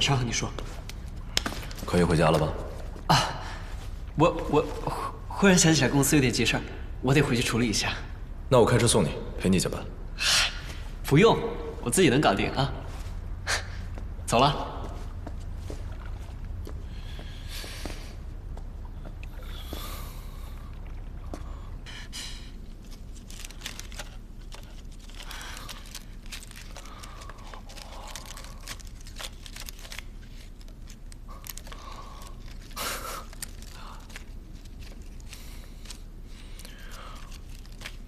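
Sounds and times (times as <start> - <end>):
rustling and crinkling: 0.0 - 6.2, 10.6 - 20.0, 22.3 - 38.0
low steady hum: 0.0 - 38.0.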